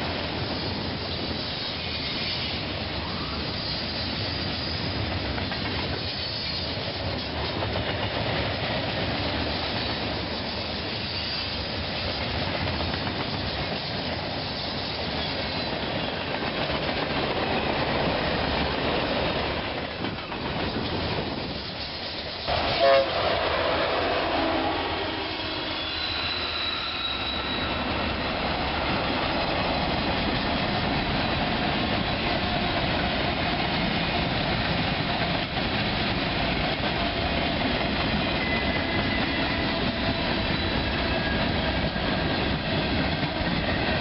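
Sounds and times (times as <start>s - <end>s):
train wheel clatter: 0.0s - 23.4s, 25.9s - 44.0s
train rumbling past: 0.0s - 44.0s
train horn blast: 22.5s - 28.0s.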